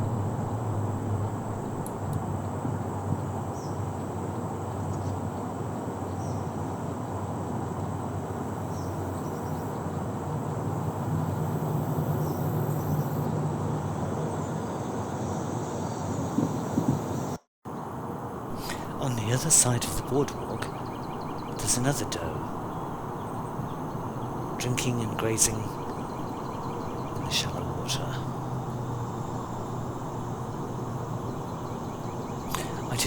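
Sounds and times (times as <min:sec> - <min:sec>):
distant traffic rumble: 0:00.0 - 0:04.8, 0:17.8 - 0:33.0
constant hiss: 0:00.0 - 0:05.2, 0:17.8 - 0:33.0
faint high chirps: 0:18.5 - 0:33.0.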